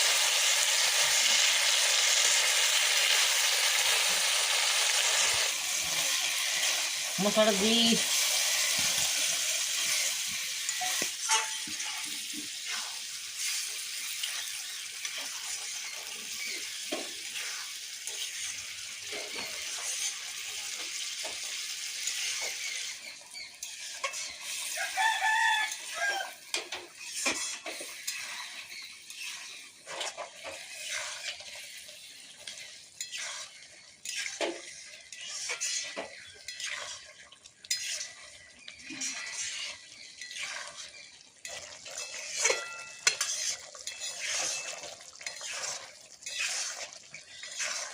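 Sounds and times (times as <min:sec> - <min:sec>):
paste sizzling in hot oil: 0:00.0 - 0:47.9
spatula scraping a pan: 0:00.0 - 0:47.9
rooster crowing: 0:24.7 - 0:26.4.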